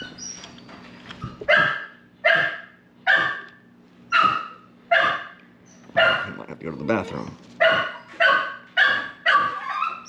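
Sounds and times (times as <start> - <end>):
dog barking: 1.5 - 6.5, 7.6 - 10.0.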